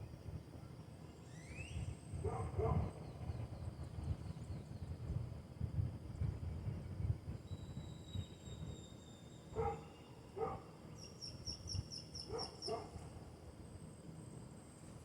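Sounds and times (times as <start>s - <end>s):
faint thin whistling: 1.2s - 2.0s, 7.4s - 10.3s.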